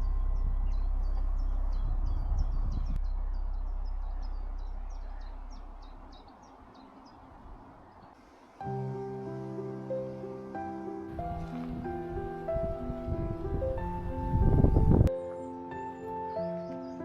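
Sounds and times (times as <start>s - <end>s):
low rumble: 0.0s - 6.6s, 11.1s - 15.1s.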